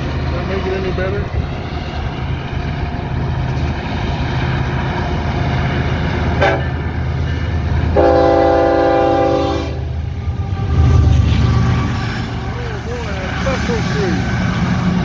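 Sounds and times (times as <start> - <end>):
low train rumble: 0.0 - 15.0
locomotive air horn: 6.4 - 6.8, 8.0 - 13.1.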